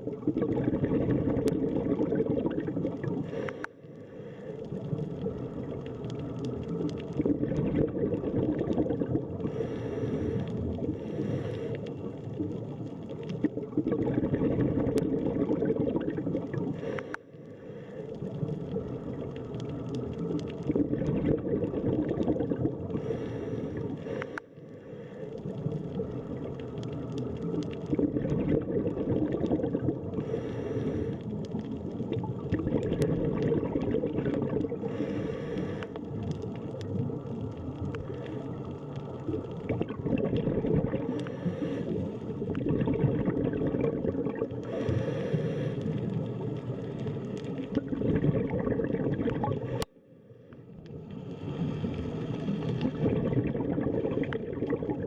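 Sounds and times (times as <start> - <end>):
regulator exhale bubbling: 0.0 - 50.0, 51.0 - 55.0
regulator inhale hissing: 3.1 - 4.8, 9.4 - 12.2, 16.7 - 18.4, 22.9 - 25.6, 30.2 - 31.4, 34.8 - 36.2, 41.0 - 42.5, 44.6 - 47.6.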